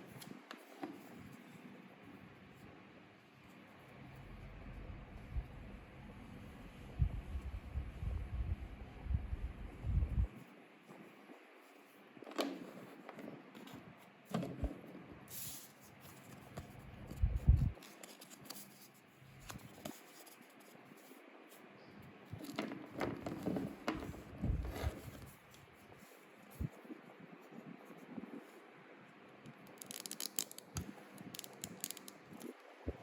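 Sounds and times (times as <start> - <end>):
packaging rustling and tearing: 29.7 - 32.4.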